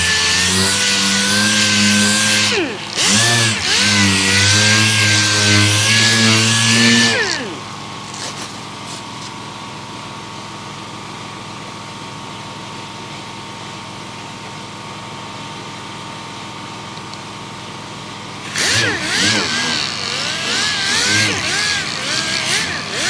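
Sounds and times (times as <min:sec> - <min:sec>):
machine sander humming: 0:00.0 - 0:09.0, 0:18.4 - 0:23.0.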